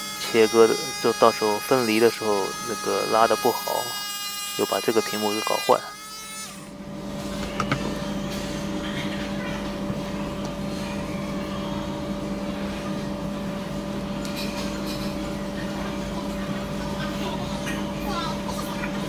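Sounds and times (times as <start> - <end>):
electric rotary grinder running: 0.0 - 6.7.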